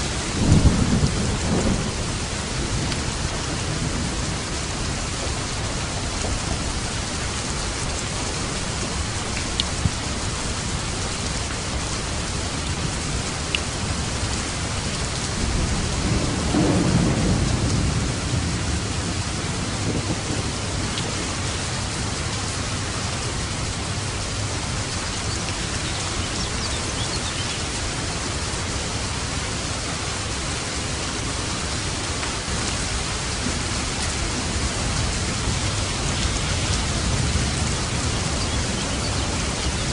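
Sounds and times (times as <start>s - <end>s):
steady rain falling: 0.0s - 39.9s
distant thunder rolling: 0.3s - 6.8s, 14.7s - 22.8s.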